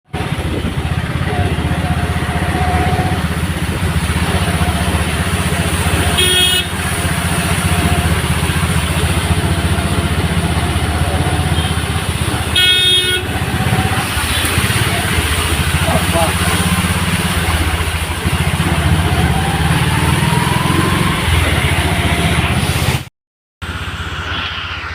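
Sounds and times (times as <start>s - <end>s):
road traffic: 0.0s - 24.9s
engine running close by: 0.1s - 24.9s
vehicle horn honks: 5.8s - 7.7s, 11.4s - 14.8s.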